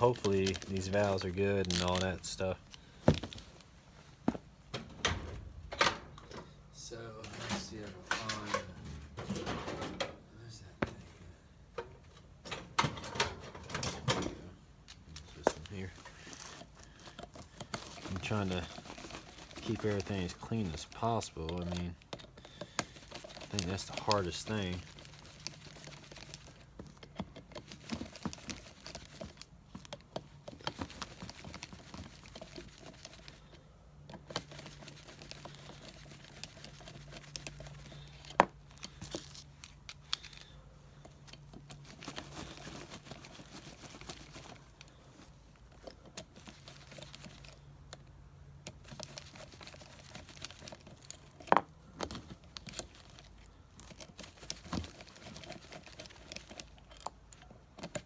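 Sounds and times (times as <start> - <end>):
metal parts clicking and rustling: 0.0 - 3.7.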